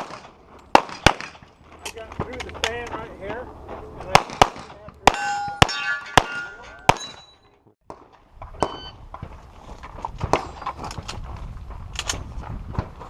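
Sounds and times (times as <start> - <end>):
pistol shots: 0.0 - 1.5, 4.1 - 7.2
steel targets clanging: 5.1 - 7.6.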